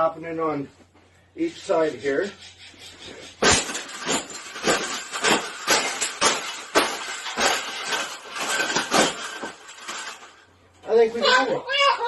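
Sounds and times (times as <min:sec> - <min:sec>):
wire cage clanking and rattling: 0:03.4 - 0:10.5.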